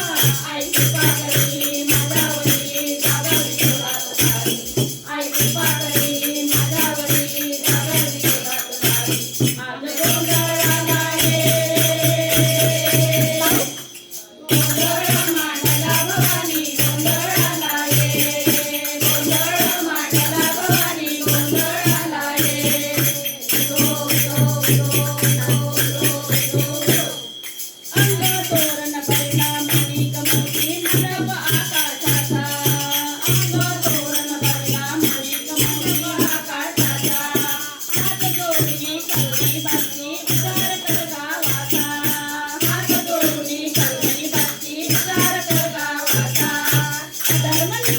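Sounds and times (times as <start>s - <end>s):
fast dense percussion: 0.0s - 47.9s
person singing: 5.1s - 27.2s.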